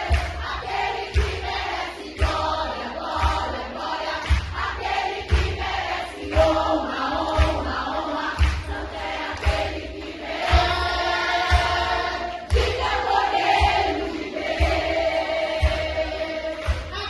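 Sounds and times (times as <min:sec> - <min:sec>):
people singing: 0:00.0 - 0:17.0
band playing gospel music: 0:06.3 - 0:17.0
low drum beat: 0:08.4 - 0:17.0.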